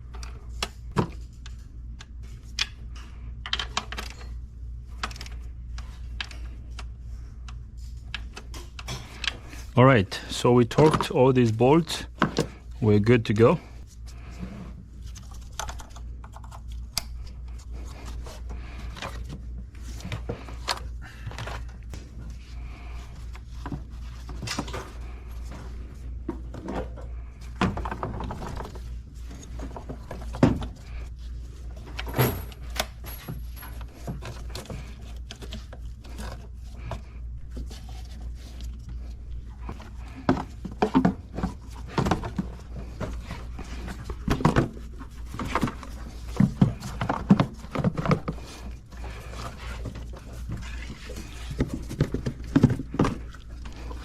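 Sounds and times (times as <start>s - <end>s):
steady low hum: 0.0s - 54.0s
tools and metal parts clinking: 3.4s - 5.4s, 31.8s - 34.7s.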